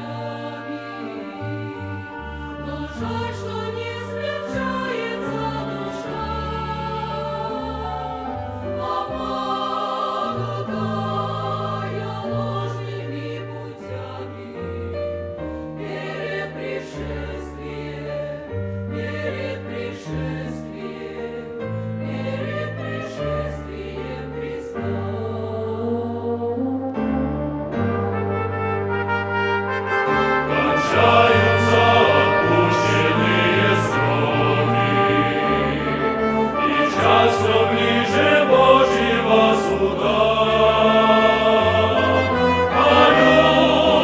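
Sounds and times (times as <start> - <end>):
chamber orchestra playing: 0.0 - 7.4, 25.3 - 44.0
church choir singing a hymn: 0.0 - 44.0.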